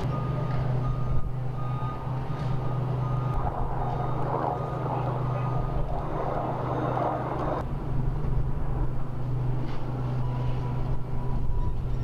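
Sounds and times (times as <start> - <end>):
vehicle engine humming: 0.0 - 12.0
rush of noise: 3.2 - 9.1.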